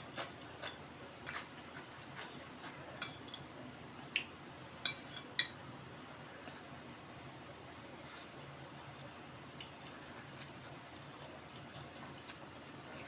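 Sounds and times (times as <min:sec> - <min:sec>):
utensils clinking against a dish: 0:03.0 - 0:03.5.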